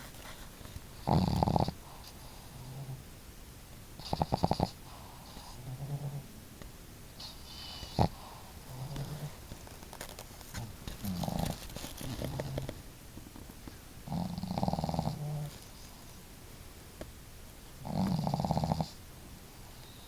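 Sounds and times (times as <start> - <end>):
dogs snoring: 1.0 - 3.0, 4.0 - 6.3, 7.2 - 9.5, 10.5 - 12.8, 14.0 - 16.0, 17.8 - 19.0.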